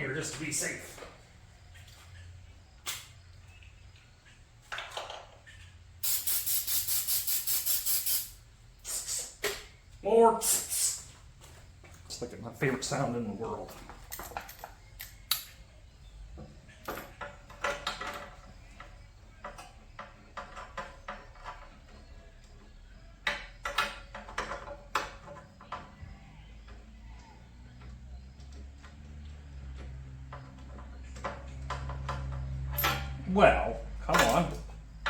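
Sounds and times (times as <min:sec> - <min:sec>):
metal tools clinking: 0:13.6 - 0:15.5, 0:32.0 - 0:33.3, 0:34.0 - 0:34.7.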